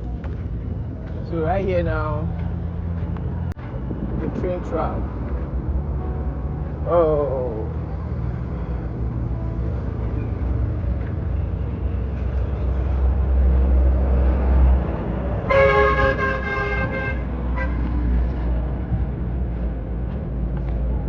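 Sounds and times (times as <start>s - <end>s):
road traffic rumbling: 0.0s - 21.0s
vehicle horn: 15.4s - 18.0s.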